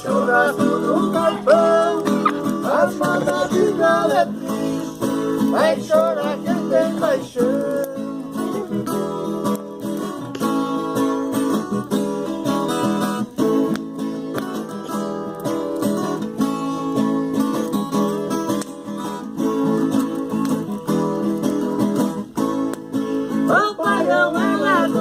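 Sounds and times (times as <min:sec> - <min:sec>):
folk guitar strummed and plucked: 0:00.0 - 0:25.0.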